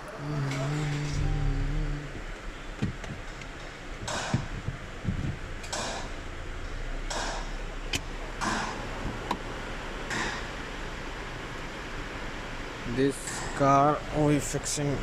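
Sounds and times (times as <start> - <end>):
steady pitched tone: 0.0 - 3.4
low steady hum: 0.0 - 15.0.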